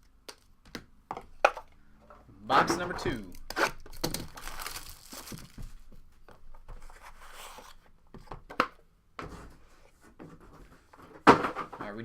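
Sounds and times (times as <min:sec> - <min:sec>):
plastic wrapping tearing and crinkling: 0:03.3 - 0:05.7.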